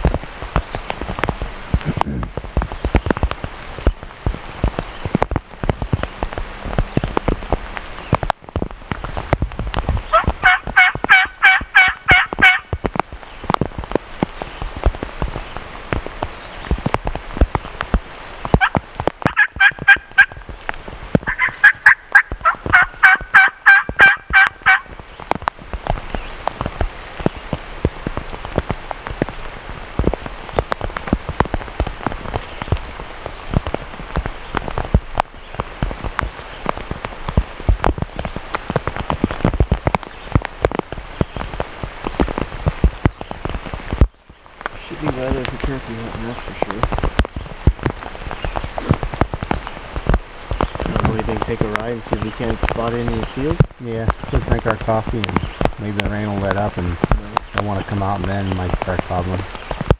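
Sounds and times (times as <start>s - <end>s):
rain pattering and dripping: 0.0s - 59.9s
turkey yelping: 10.1s - 12.7s, 18.6s - 20.4s, 21.3s - 24.9s.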